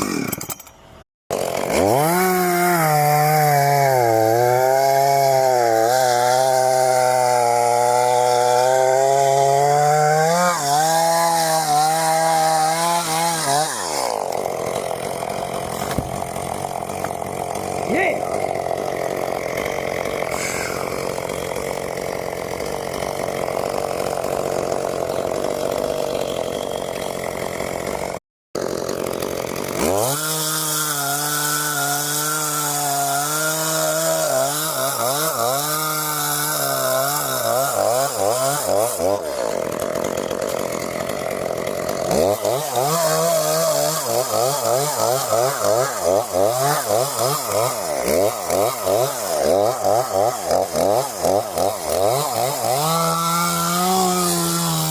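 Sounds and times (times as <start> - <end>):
chainsaw cutting wood: 0.0 - 54.9.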